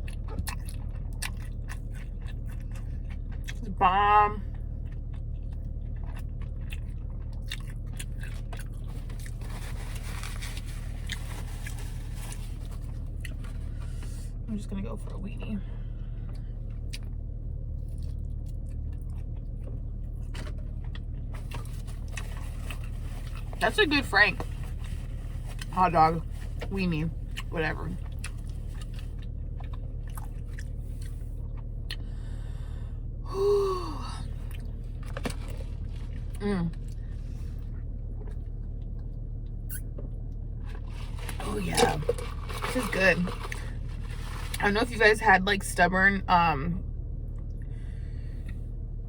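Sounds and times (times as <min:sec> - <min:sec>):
chewing crunchy food: 0:00.0 - 0:03.7, 0:04.4 - 0:14.2, 0:16.3 - 0:23.6, 0:24.4 - 0:32.4, 0:40.6 - 0:44.6
steady low hum: 0:00.0 - 0:49.0.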